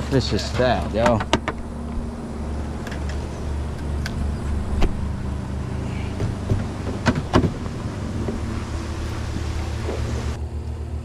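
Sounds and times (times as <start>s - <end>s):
boat motor humming: 0.0s - 11.0s.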